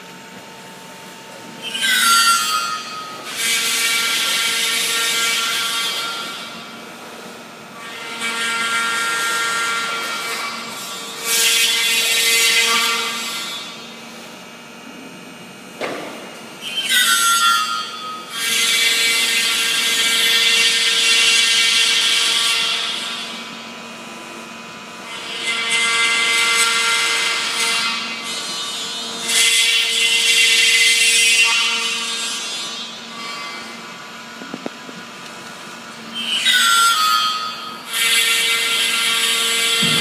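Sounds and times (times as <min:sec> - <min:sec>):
harsh machine cutting noise: 0:25.0 - 0:40.0.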